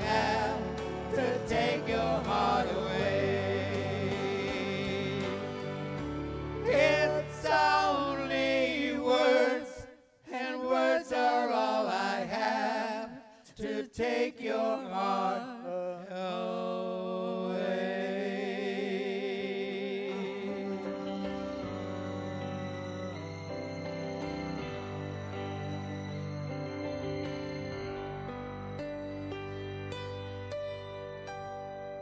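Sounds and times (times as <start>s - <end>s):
person singing with vibrato: 0.0s - 5.9s, 6.6s - 25.6s
sustained chord: 0.0s - 8.9s, 20.1s - 32.0s
soft backing music: 0.0s - 9.6s, 20.1s - 32.0s.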